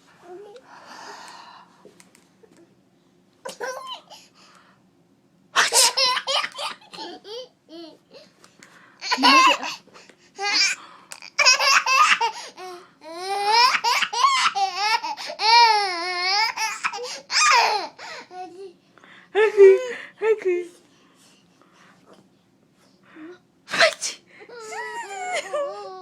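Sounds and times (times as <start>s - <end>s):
baby laughing: 5.6s - 8.0s, 9.0s - 9.8s, 11.4s - 12.4s
baby squealing laugh: 9.0s - 9.7s.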